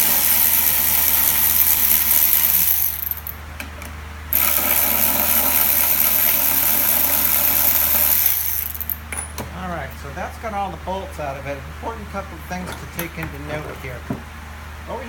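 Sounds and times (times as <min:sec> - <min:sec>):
power driver spinning bolts: 0:04.3 - 0:09.4.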